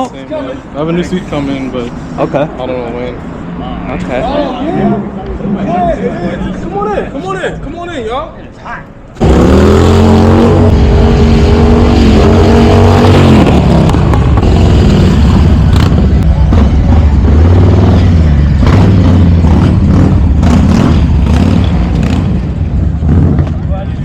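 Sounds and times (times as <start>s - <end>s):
motorcycle engine revving: 9.2s - 23.7s.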